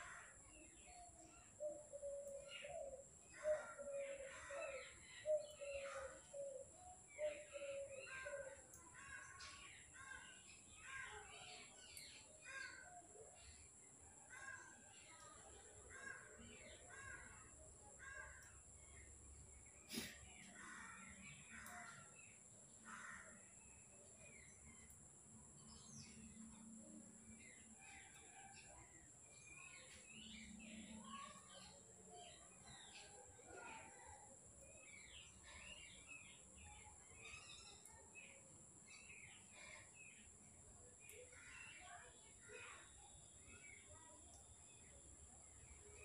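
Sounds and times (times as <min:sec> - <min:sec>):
faint bird calls: 0:00.0 - 0:13.6, 0:14.2 - 0:25.0.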